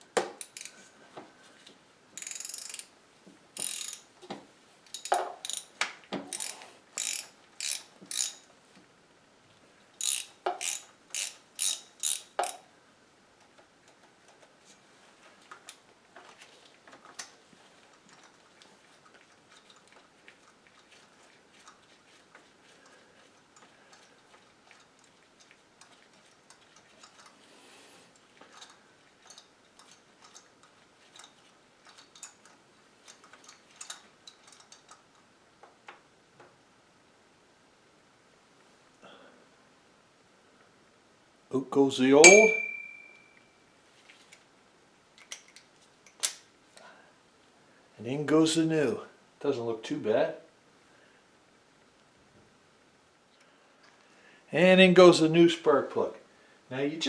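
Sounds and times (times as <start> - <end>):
ratchet wrench clicking: 0.4 - 0.8, 2.2 - 2.9, 3.6 - 4.1, 4.9 - 8.4, 10.0 - 12.6.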